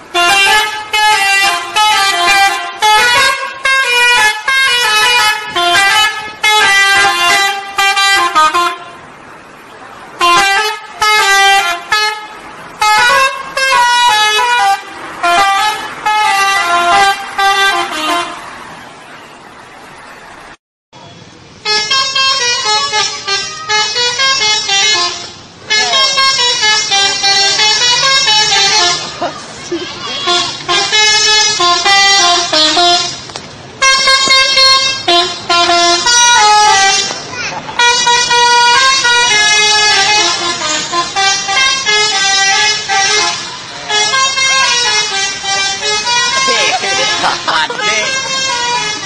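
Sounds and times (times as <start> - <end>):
multi-tone musical bus horn: 0.0 - 49.0.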